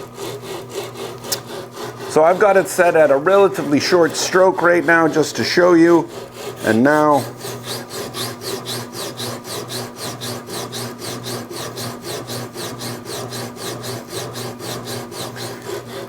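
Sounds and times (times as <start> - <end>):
blade rasping under sandpaper: 0.0 - 16.0.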